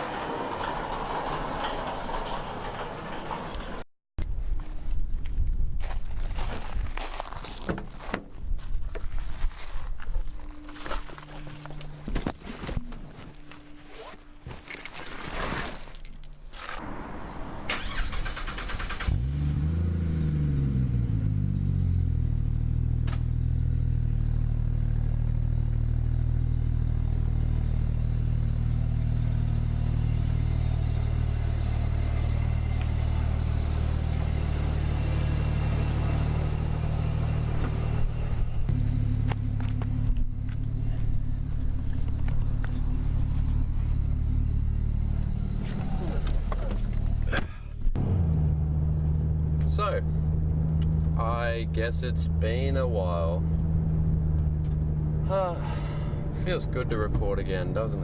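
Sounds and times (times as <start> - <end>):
car engine starting and idling: 0.0 - 3.9, 16.1 - 58.0
knocks and rustling: 0.0 - 3.9.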